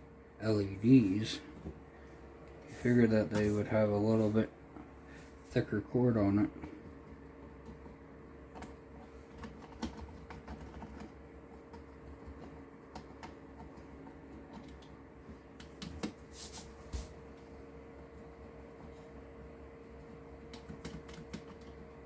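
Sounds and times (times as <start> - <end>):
keyboard keys clicking: 7.6 - 11.1, 11.7 - 14.9, 20.5 - 21.9.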